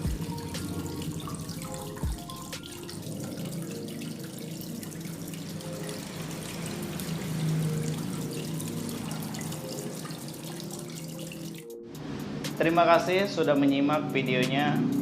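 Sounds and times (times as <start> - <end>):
water trickling over waterfall: 0.0 - 11.8.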